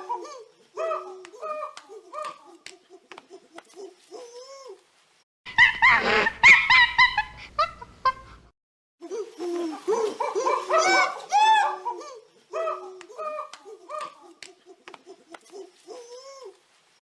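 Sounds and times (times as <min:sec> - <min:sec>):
animal squealing yelps: 0:09.2 - 0:14.3.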